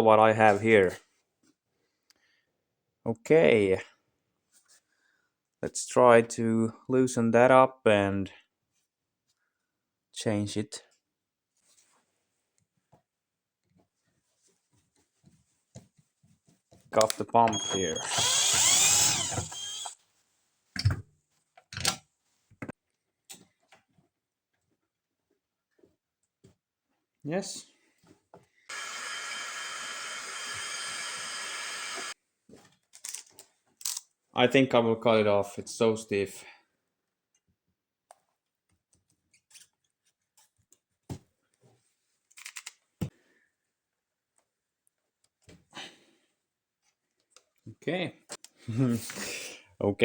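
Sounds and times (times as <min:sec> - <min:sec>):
hand tools clicking and scraping: 0:17.0 - 0:20.0
power tool whining: 0:17.5 - 0:20.0, 0:28.7 - 0:32.2.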